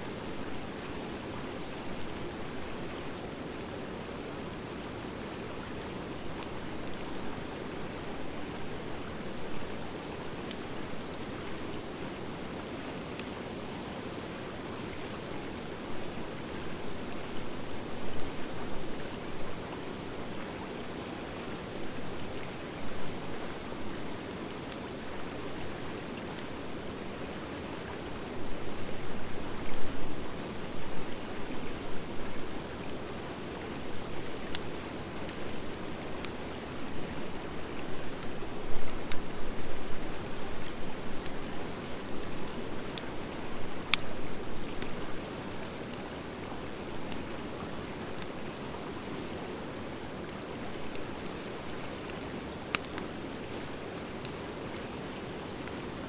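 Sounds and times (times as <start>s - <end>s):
wood fire hissing and crackling: 0.0s - 56.0s
sharp pops from burning wood: 42.9s - 44.2s.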